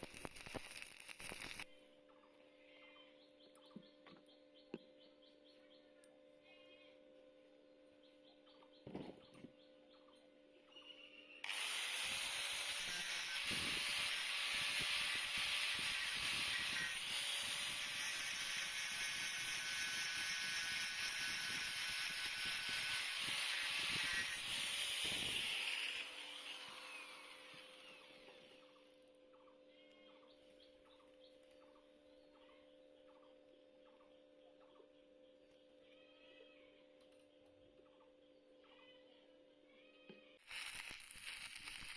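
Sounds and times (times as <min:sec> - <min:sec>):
welding arc crackling and hissing: 0:00.0 - 0:01.7, 0:11.5 - 0:27.8, 0:40.4 - 0:41.9.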